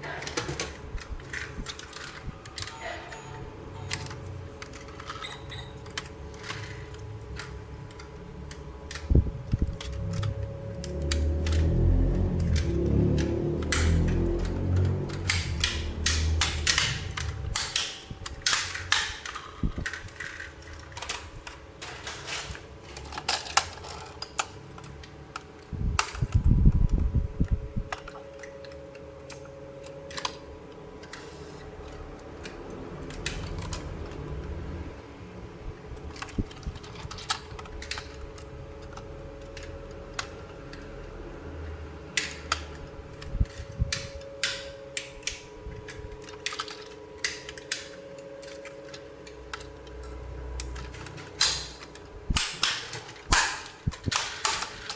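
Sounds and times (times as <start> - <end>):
plastic toy pieces clicking: 0.2 - 2.7, 4.0 - 27.0, 36.0 - 41.0, 42.2 - 54.9.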